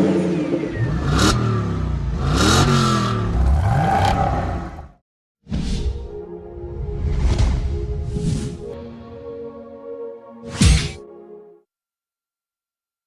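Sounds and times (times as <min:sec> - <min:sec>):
car engine revving: 0:00.7 - 0:05.0.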